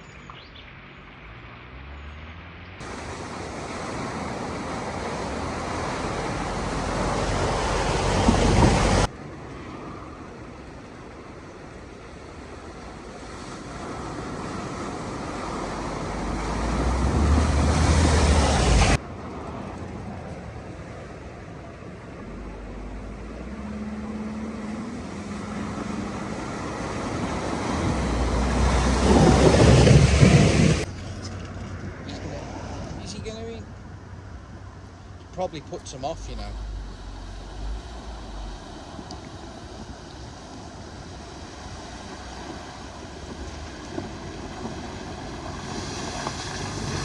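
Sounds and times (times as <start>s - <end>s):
steady rushing noise outdoors: 0.0s - 47.0s
vehicle engine approaching: 14.8s - 34.7s, 35.3s - 47.0s
wind buffeting microphone: 24.7s - 31.0s.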